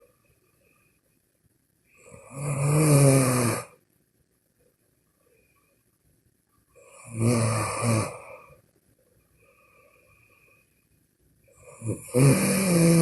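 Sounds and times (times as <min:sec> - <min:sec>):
person snoring: 0:02.0 - 0:03.8, 0:06.8 - 0:08.6, 0:11.5 - 0:13.0.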